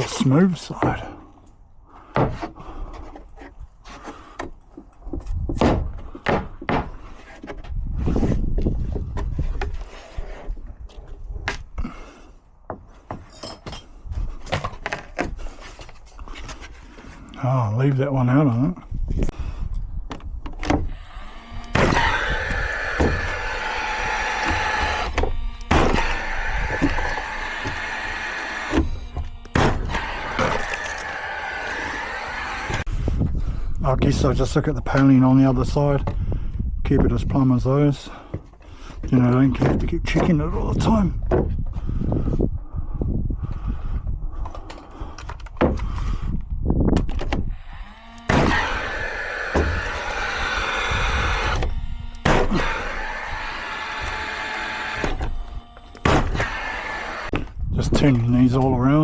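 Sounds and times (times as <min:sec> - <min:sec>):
hollow wooden knocks: 0:04.4 - 0:07.7
small electric motor whining: 0:20.5 - 0:33.1, 0:47.2 - 0:57.7.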